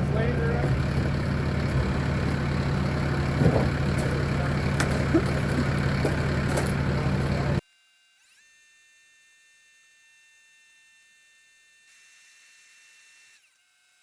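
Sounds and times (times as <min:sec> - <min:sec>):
diesel engine idling: 0:00.0 - 0:07.6.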